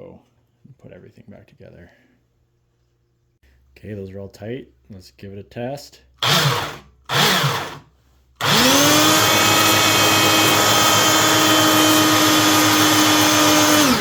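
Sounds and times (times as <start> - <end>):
belt sander motor whine: 6.2 - 7.8, 8.4 - 14.0.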